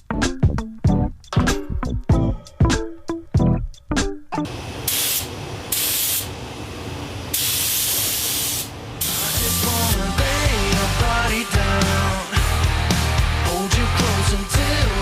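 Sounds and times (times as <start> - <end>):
music: 0.0 - 4.5, 9.2 - 15.0
air gun hissing: 4.6 - 6.4, 7.2 - 12.6.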